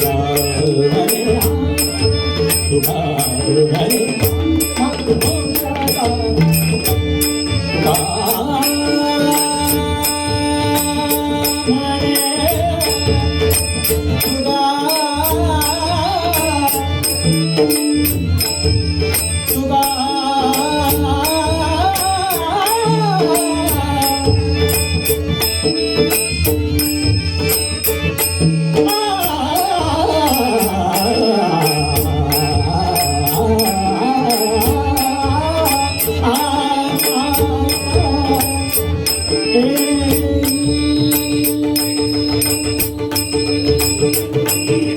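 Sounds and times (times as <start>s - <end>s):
man singing devotional song: 0.0s - 26.8s, 27.4s - 44.9s
percussion beat: 0.0s - 44.9s.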